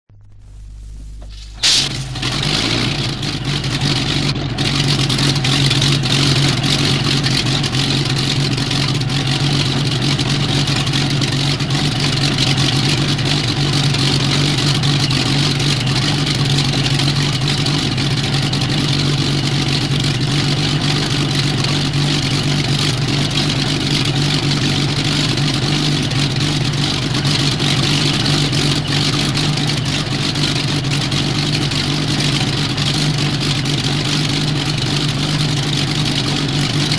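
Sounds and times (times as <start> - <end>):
radial aircraft engine ticking over: 0.1 - 36.9
recording hiss: 0.6 - 2.2.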